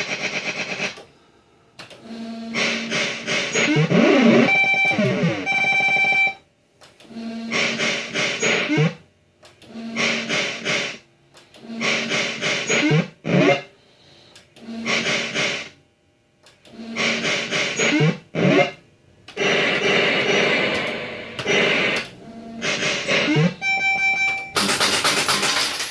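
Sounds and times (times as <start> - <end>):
distorted electronic jingle: 2.5 - 6.3, 17.1 - 18.8, 19.4 - 24.6.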